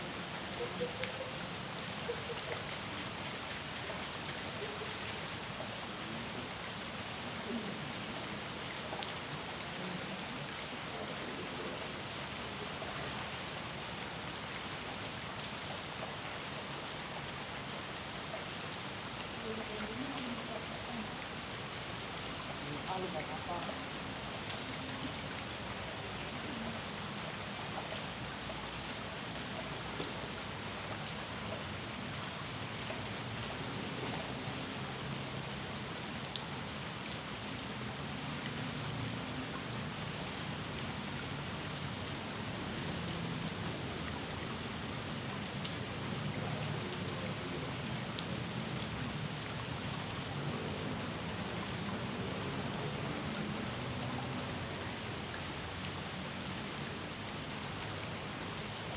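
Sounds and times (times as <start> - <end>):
rain falling on a pond: 0.0 - 58.9.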